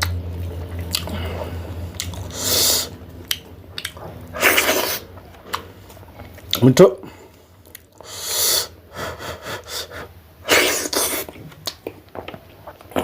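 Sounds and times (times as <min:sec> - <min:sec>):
mouth eating sounds: 0:00.0 - 0:05.7, 0:10.5 - 0:13.0.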